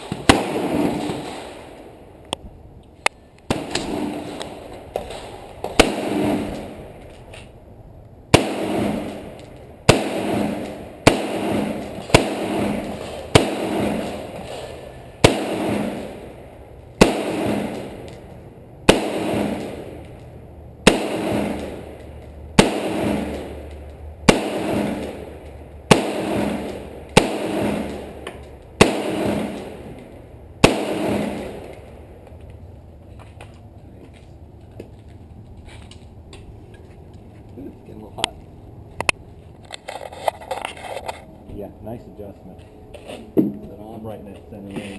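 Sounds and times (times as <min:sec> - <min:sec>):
gunshots with reverberating tail: 0:00.0 - 0:02.2, 0:03.5 - 0:07.2, 0:08.3 - 0:32.2.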